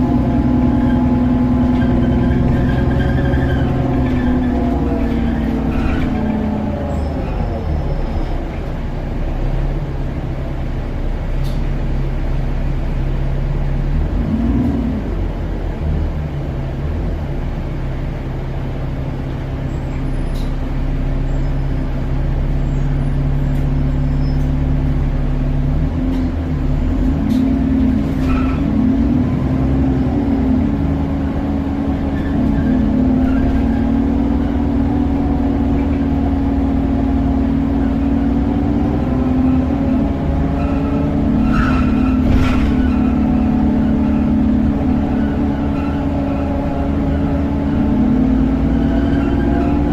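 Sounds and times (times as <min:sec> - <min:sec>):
bus diesel engine humming: 0:00.0 - 0:49.9.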